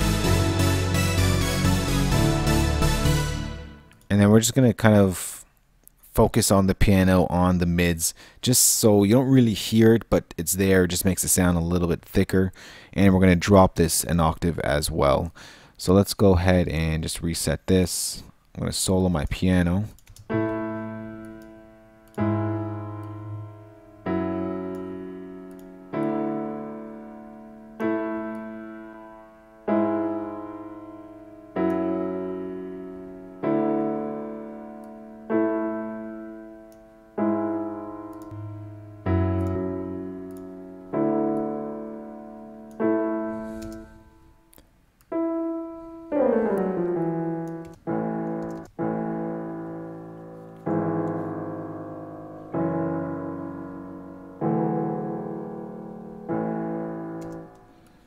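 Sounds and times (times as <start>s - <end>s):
piano chords ringing: 0.0s - 4.5s, 20.3s - 44.5s, 45.1s - 58.0s.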